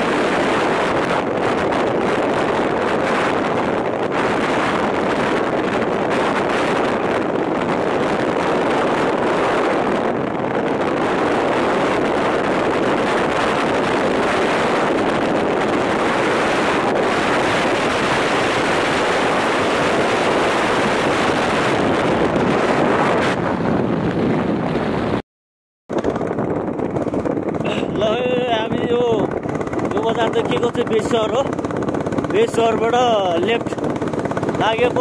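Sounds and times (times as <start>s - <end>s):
motorcycle engine running: 0.0s - 22.8s, 25.9s - 35.0s
wind buffeting microphone: 0.0s - 25.2s, 25.9s - 35.0s.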